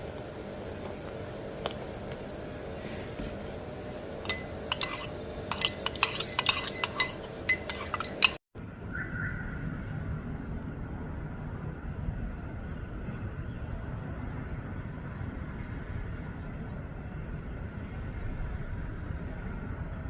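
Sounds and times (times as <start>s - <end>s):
cutlery and dishes clinking: 3.9s - 8.4s.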